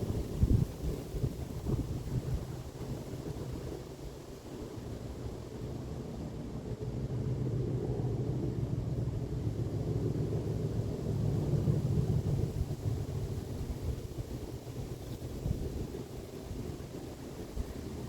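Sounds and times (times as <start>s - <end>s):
wind on microphone: 0.0s - 3.7s.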